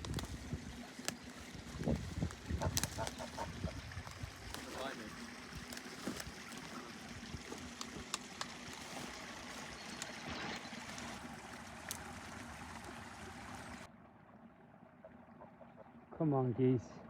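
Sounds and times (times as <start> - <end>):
stream water running: 0.0 - 17.0
faint clicks: 7.4 - 12.2.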